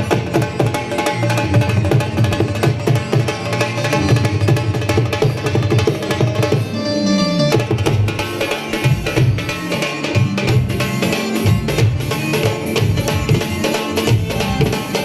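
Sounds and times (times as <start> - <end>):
music with fast drums and bass: 0.0 - 15.0.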